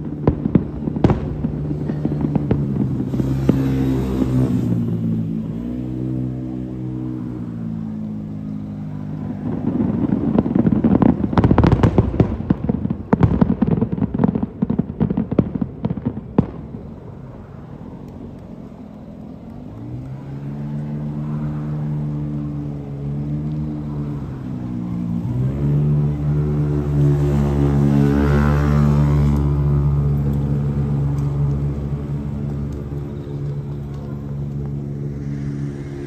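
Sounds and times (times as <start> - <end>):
fireworks crackling bangs: 0.0 - 36.0
engine running: 15.8 - 36.0.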